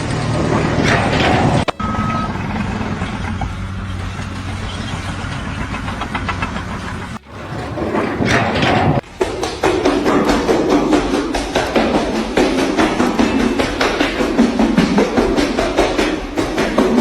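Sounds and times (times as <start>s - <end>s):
engine running steadily: 0.0s - 7.4s.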